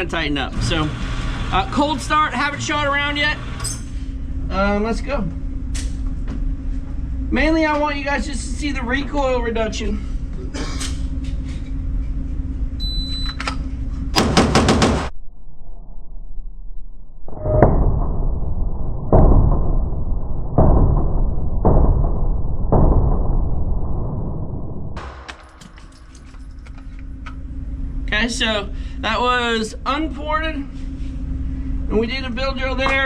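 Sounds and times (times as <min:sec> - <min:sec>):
slowed deep muffled booms: 0:17.3 - 0:25.3.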